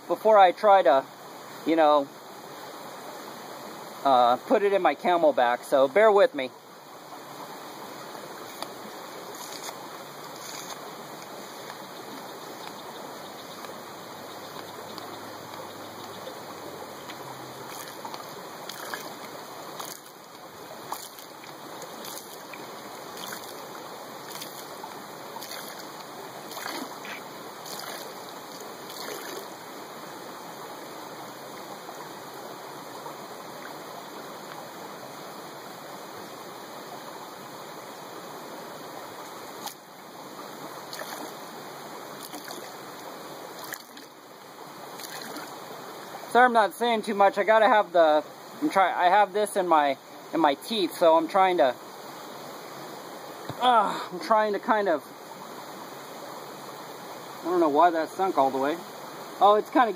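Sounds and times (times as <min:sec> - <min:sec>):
creek water rushing: 0:00.0 - 0:59.9
hand pump strokes: 0:09.3 - 0:10.8.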